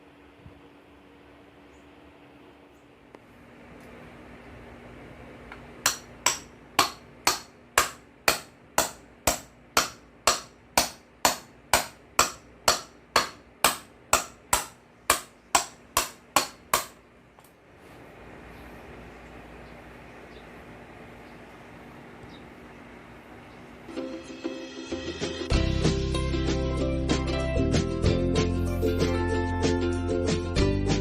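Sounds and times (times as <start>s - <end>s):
hammer striking metal: 5.8s - 17.0s.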